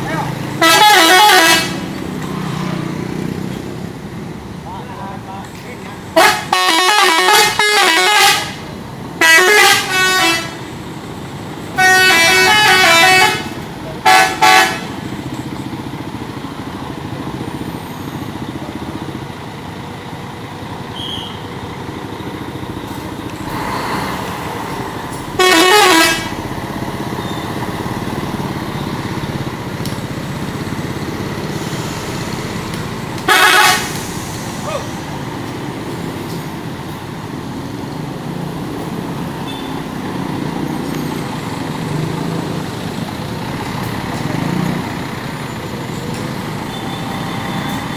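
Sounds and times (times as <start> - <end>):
engine and traffic rumble: 0.0 - 47.9
multi-tone musical bus horn: 0.6 - 1.9, 6.1 - 10.7, 11.7 - 15.1, 25.3 - 26.5, 33.2 - 35.0.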